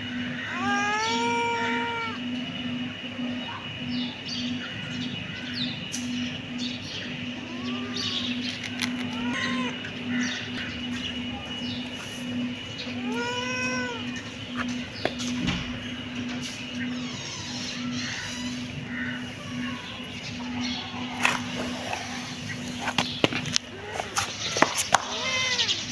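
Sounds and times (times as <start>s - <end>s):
low pulsing hum: 0.0s - 23.9s
kittens meowing: 0.2s - 2.4s, 7.2s - 10.6s, 12.3s - 22.8s, 23.7s - 25.9s.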